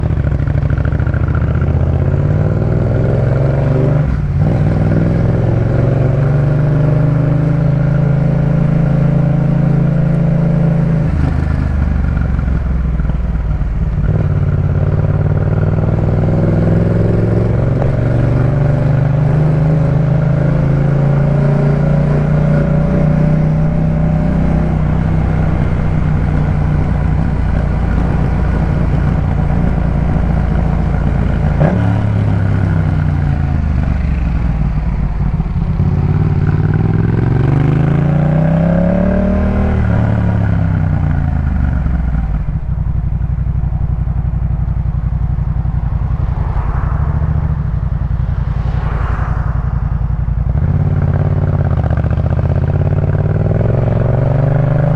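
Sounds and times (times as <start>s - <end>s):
motorcycle engine revving: 0.0s - 54.9s.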